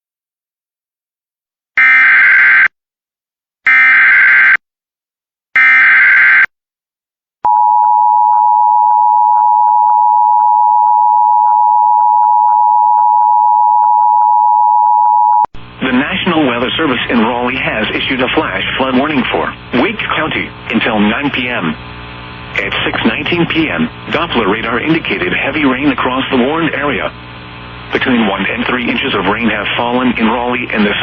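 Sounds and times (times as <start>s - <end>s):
steady attention signal tone: 7.5s - 15.5s.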